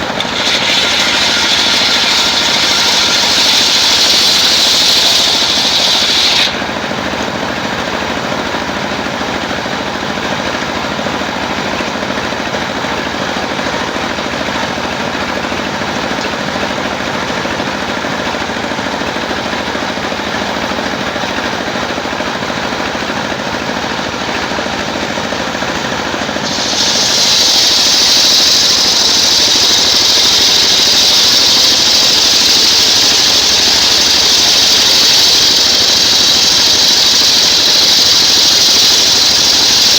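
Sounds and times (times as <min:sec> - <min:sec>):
high-pitched saw cutting timber: 0:00.0 - 0:07.2, 0:26.0 - 0:39.9
sawmill engine running: 0:00.0 - 0:39.9.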